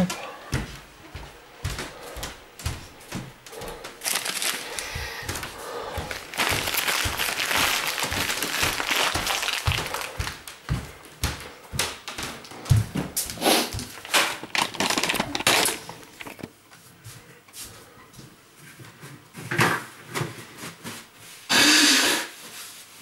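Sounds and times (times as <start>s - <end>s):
rustling: 3.0s - 10.6s, 13.2s - 16.5s.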